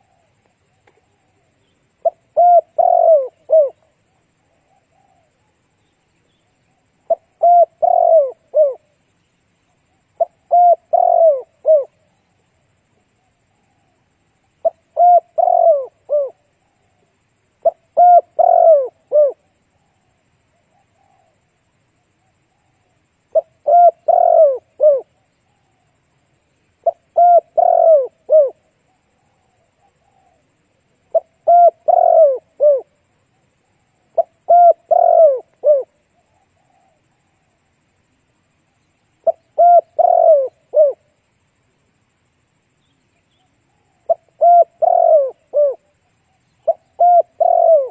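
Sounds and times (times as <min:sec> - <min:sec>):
dove cooing: 0:00.0 - 0:05.6, 0:06.4 - 0:09.0, 0:10.2 - 0:12.3, 0:14.6 - 0:20.0, 0:22.5 - 0:25.8, 0:26.8 - 0:33.0, 0:33.6 - 0:37.4, 0:39.2 - 0:41.1, 0:43.6 - 0:47.9.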